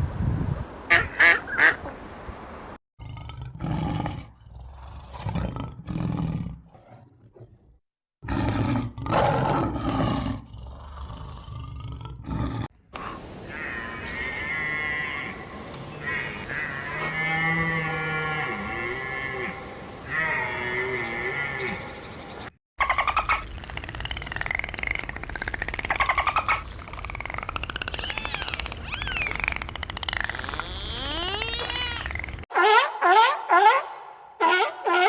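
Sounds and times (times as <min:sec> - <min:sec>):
high tonal animal calls: 0:13.4 - 0:22.1, 0:22.8 - 0:33.8.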